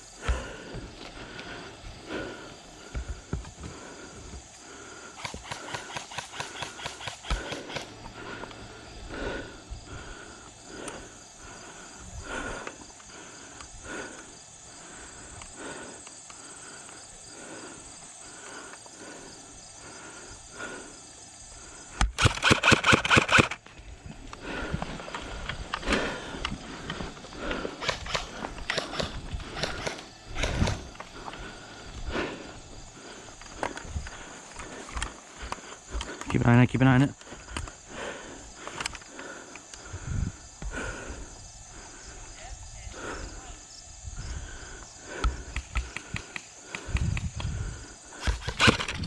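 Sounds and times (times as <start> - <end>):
airsoft gun full-auto burst: 5.2 - 7.9, 22.0 - 23.6, 48.2 - 49.0.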